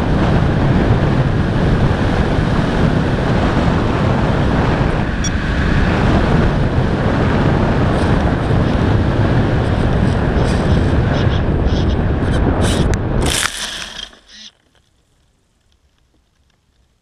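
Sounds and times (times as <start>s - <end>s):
wind buffeting microphone: 0.0s - 13.5s.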